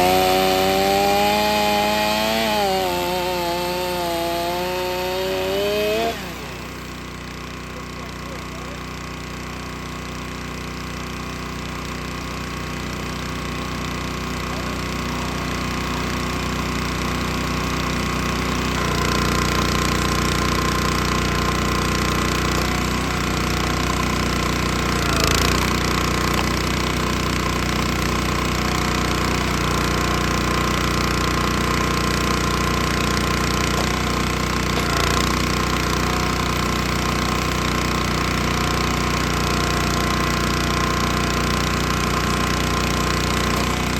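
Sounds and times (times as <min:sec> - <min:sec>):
small gas engine running: 0:00.0 - 0:43.9.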